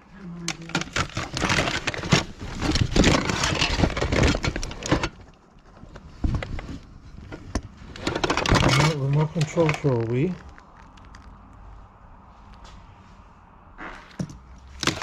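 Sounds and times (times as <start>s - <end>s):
plastic items clattering: 0.3s - 11.3s, 14.2s - 15.0s.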